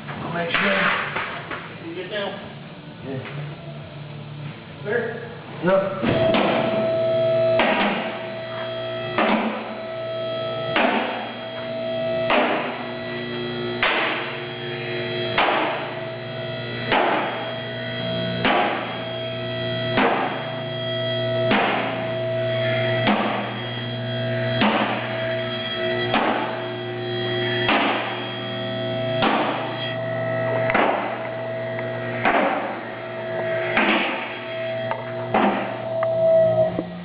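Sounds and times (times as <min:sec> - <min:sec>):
sustained chords: 0:01.8 - 0:37.0
strong drum hits: 0:06.0 - 0:06.9.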